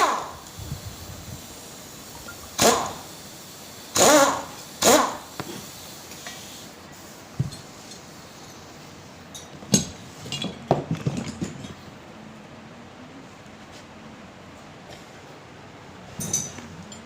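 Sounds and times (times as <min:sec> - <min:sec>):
metal tools clinking and knocking: 0:16.2 - 0:17.0.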